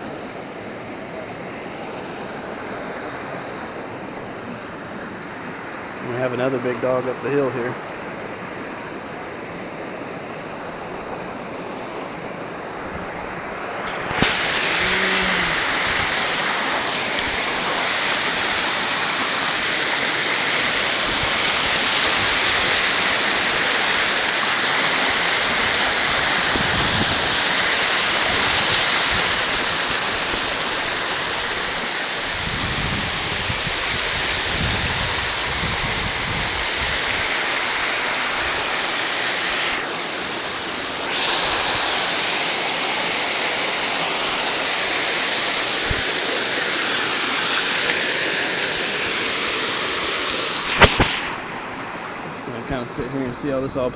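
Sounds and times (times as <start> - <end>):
waterfall rushing: 0.0 - 53.9.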